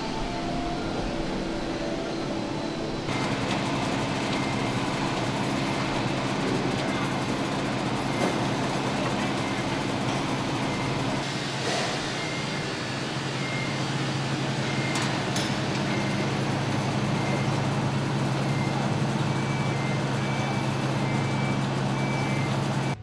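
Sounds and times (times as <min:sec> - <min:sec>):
backup alarm beeping: 0:00.0 - 0:11.3, 0:11.9 - 0:23.0
diesel engine running: 0:00.0 - 0:23.0.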